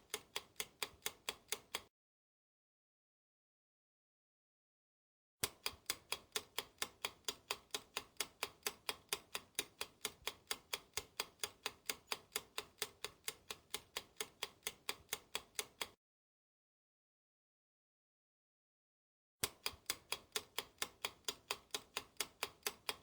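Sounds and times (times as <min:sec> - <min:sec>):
clock ticking: 0:00.0 - 0:01.9, 0:05.4 - 0:16.0, 0:19.4 - 0:23.0.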